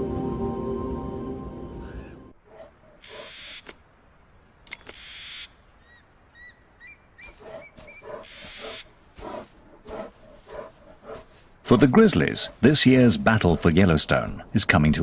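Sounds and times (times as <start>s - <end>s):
repeated low animal calls: 1.8s - 3.8s, 6.4s - 14.5s
animal chirping calls: 2.0s - 3.8s, 4.8s - 8.9s.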